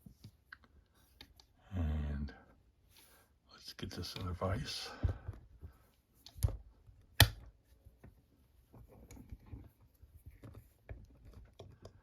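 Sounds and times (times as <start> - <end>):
soft clicks and rustles: 3.9 - 12.0.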